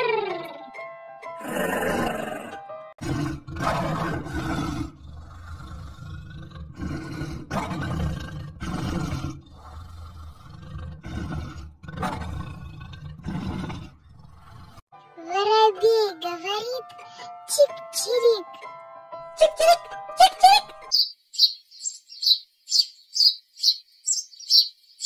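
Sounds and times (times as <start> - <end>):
lion roaring and growling: 1.4 - 14.9.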